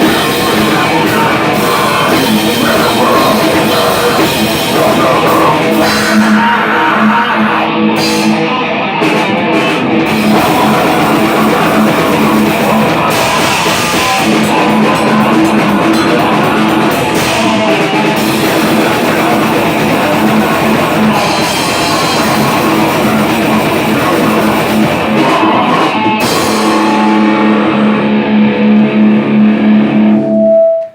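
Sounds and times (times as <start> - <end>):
drum kit: 0.0 - 30.9
electric guitar: 0.0 - 30.9.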